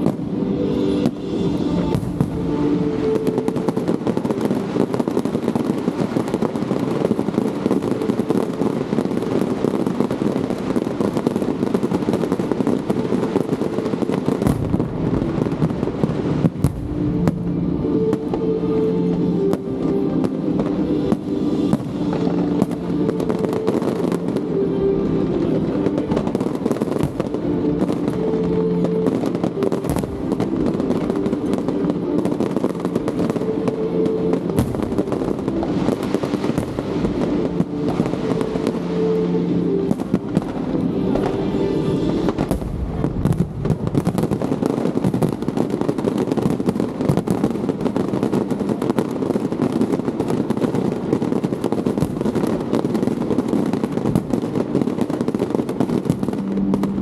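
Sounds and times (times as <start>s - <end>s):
fireworks crackling and popping: 0.0s - 57.0s
music playing: 0.0s - 57.0s.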